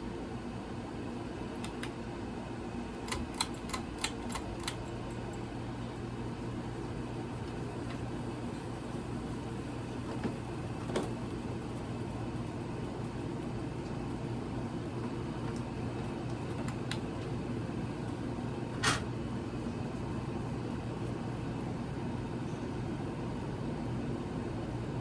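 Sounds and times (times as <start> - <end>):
ceiling fan motor hum: 0.0 - 25.0
fan clicks: 1.6 - 2.0, 2.9 - 6.1, 6.9 - 8.5, 10.0 - 11.4, 15.4 - 17.4, 18.7 - 19.2.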